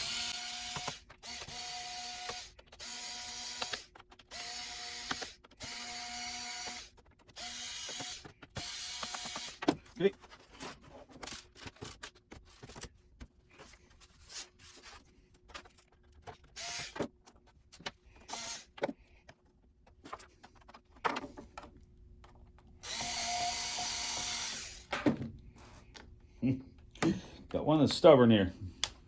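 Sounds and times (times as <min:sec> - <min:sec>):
electric screwdriver running: 0:00.0 - 0:09.6, 0:16.6 - 0:17.0, 0:18.3 - 0:18.7, 0:22.8 - 0:24.9.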